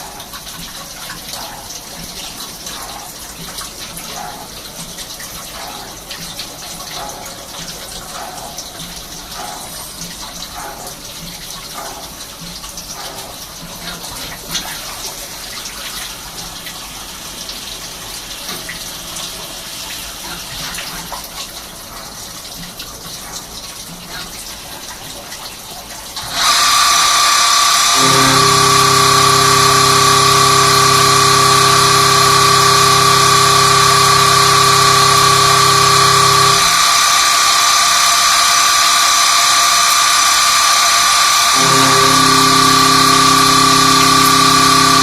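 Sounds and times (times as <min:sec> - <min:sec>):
high-pitched machining whine: 0:26.2 - 0:45.0
lathe running: 0:26.2 - 0:45.0
faint blips: 0:26.9 - 0:45.0.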